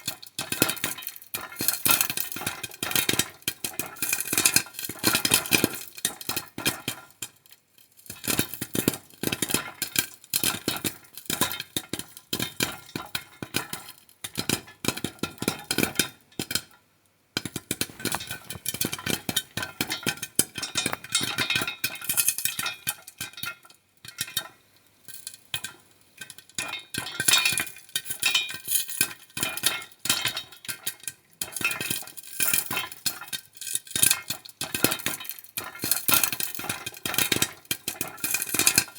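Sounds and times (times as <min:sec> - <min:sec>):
popcorn popping in a pan: 0:00.0 - 0:38.9.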